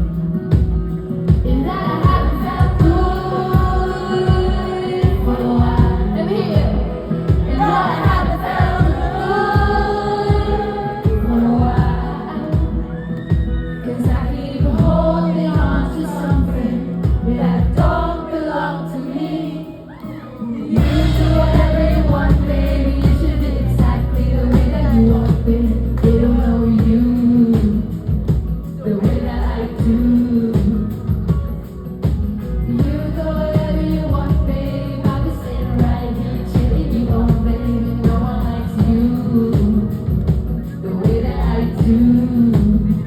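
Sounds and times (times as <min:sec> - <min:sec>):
live pop music: 0:00.0 - 0:43.0
person singing: 0:01.5 - 0:31.5.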